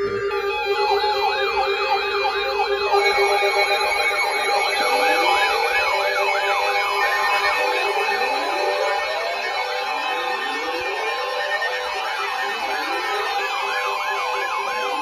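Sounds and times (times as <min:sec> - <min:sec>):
electronic siren yelp: 0:00.0 - 0:15.0
steady alarm tones: 0:00.0 - 0:15.0
rising siren wail: 0:04.5 - 0:12.6.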